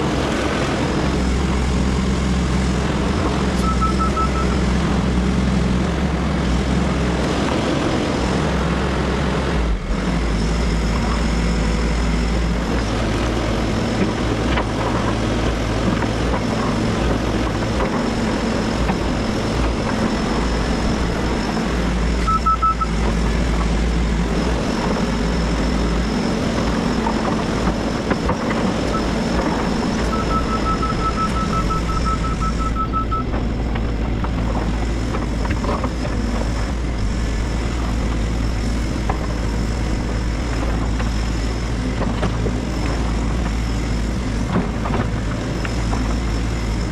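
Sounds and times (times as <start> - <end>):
diesel engine running: 0.0 - 46.9
rapid beeping alarm: 3.6 - 4.6, 22.2 - 23.0, 28.8 - 33.3.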